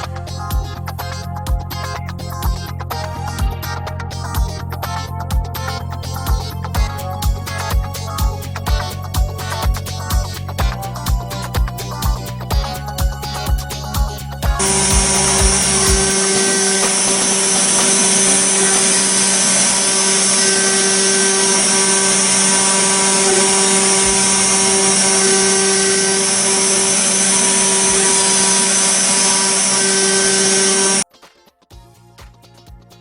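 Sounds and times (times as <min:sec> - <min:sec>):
metal cutting noise: 0:14.5 - 0:31.0
router spindle high whine: 0:14.6 - 0:31.0.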